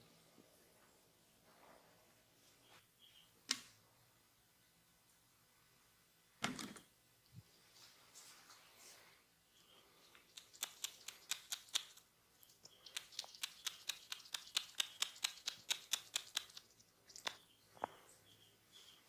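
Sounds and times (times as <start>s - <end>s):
rhythmic massage hand taps: 12.9s - 17.4s.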